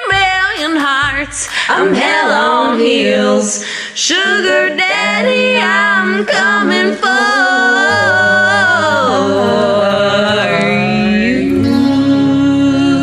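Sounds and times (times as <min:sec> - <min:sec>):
woman singing in harmony: 0:01.7 - 0:13.0.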